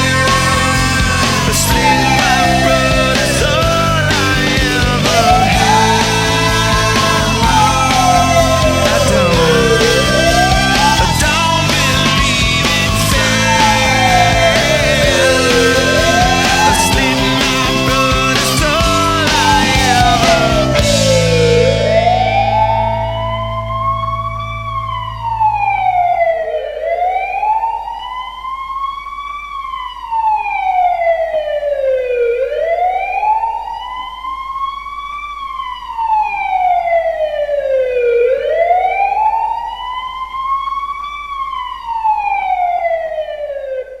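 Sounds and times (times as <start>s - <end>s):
low held music chord: 0.0s - 26.8s
siren wailing: 0.0s - 44.0s.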